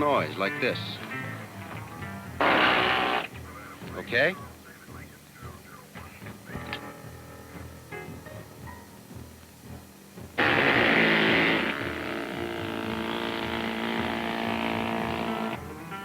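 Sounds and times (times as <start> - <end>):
powered cutting tool humming: 0.0 - 4.0, 10.4 - 15.8.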